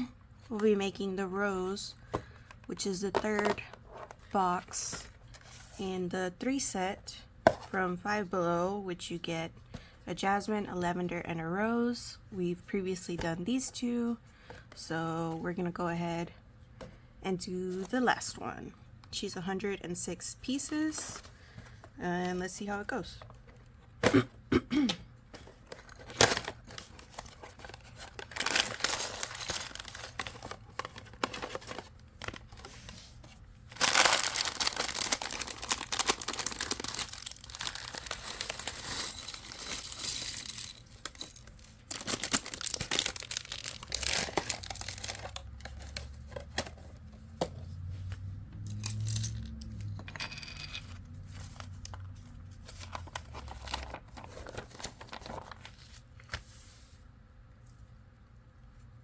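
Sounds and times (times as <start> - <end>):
packaging tearing and rustling: 25.6 - 32.9, 33.7 - 46.2, 52.7 - 55.9.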